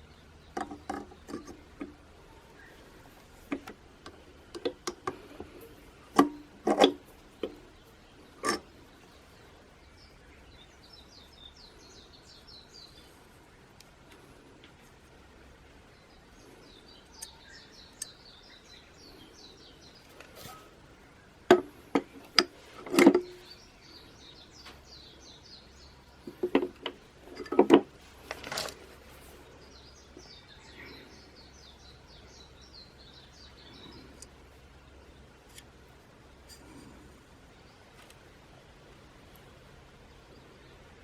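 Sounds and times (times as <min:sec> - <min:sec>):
sharp knocks and clatter: 0:26.3 - 0:28.8.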